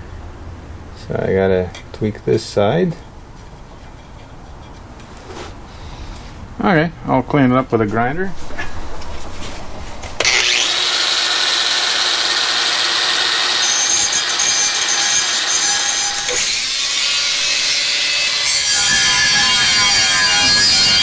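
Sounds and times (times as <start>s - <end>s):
angle grinder grinding steel: 10.2s - 21.0s.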